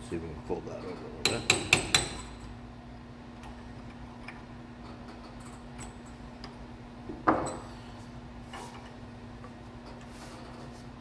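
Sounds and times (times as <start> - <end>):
hammer striking chisel: 1.2 - 2.3.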